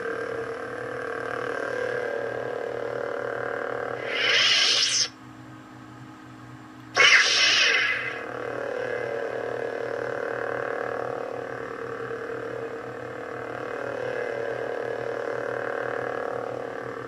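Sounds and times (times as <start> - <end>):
buzzing lightsaber hum: 3.8 - 5.2, 7.0 - 16.9.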